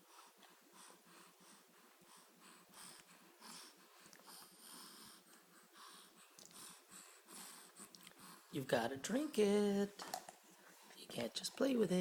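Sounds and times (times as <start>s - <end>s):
baby snuffly breathing: 0.0s - 8.5s.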